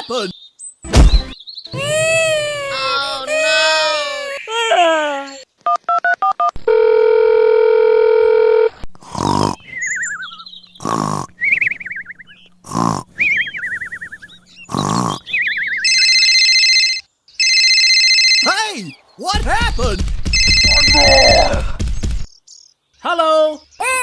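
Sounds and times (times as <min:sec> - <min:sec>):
buzzer-like tone: 0:20.4 - 0:21.4.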